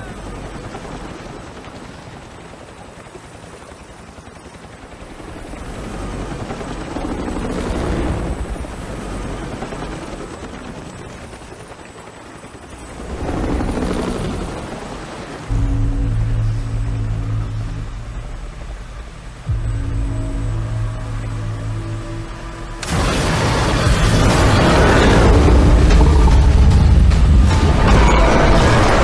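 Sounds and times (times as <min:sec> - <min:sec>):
helicopter rotor and engine rumble: 0:00.0 - 0:29.0.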